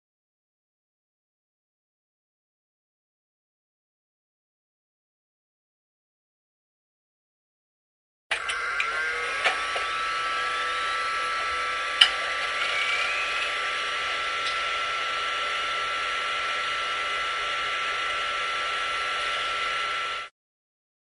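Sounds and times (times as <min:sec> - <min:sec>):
siren holding steady pitch: 0:08.3 - 0:20.3.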